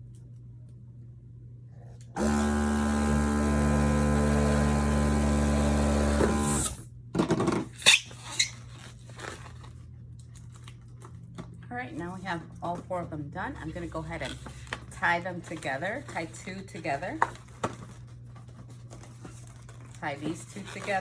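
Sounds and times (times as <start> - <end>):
electric balloon inflator running: 2.1 - 6.9
handling rustles and clicks: 14.2 - 21.0.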